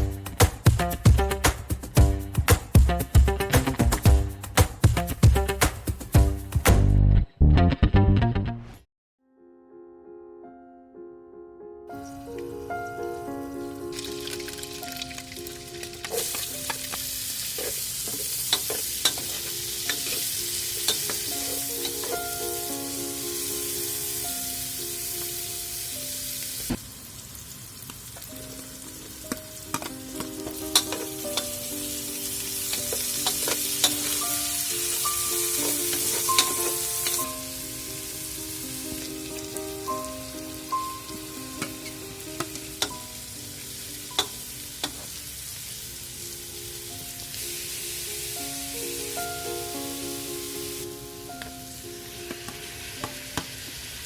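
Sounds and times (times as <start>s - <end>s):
food sizzling in hot oil: 12.0s - 54.0s
utensil clicking against pan: 29.8s - 31.5s, 44.2s - 45.0s.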